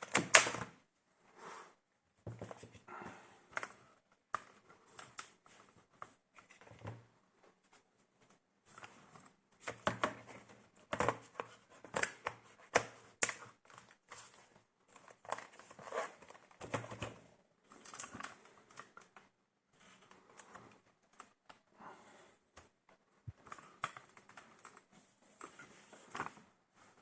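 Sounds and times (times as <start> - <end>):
hands clicking plastic parts: 0.0 - 0.7, 9.6 - 14.3, 22.6 - 24.9.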